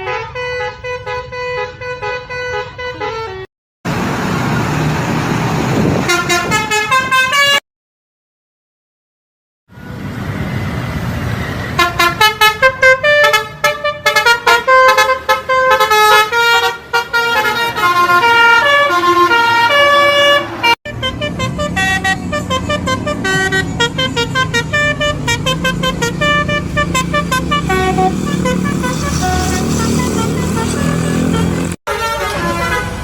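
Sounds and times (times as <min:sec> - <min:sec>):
musical bus horn playing a tune: 0:00.0 - 0:03.5, 0:06.0 - 0:07.6, 0:11.8 - 0:33.0
low rumble of bus engine: 0:00.0 - 0:07.6, 0:09.7 - 0:33.0.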